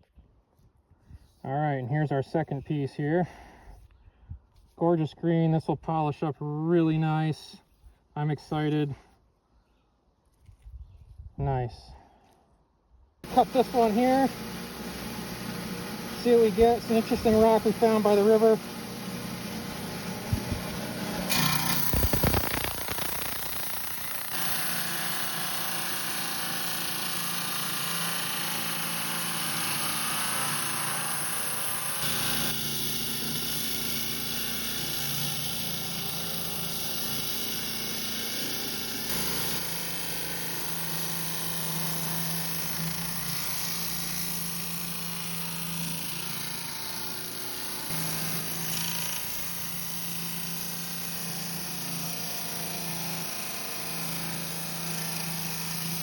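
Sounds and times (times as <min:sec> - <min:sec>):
rock saw grinding stone: 0:13.2 - 0:56.0.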